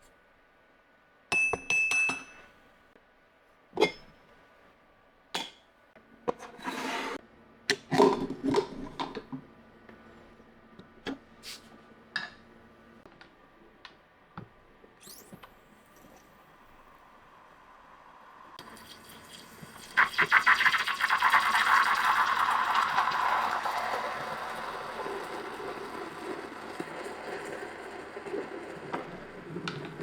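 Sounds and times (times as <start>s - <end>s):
cups and utensils clinking: 3.8s - 4.1s.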